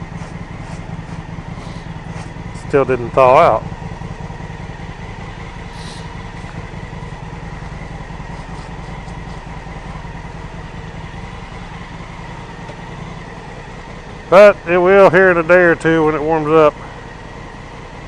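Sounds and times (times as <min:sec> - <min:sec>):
motorcycle engine idling: 0:00.0 - 0:18.0
brief hiss: 0:05.7 - 0:06.2.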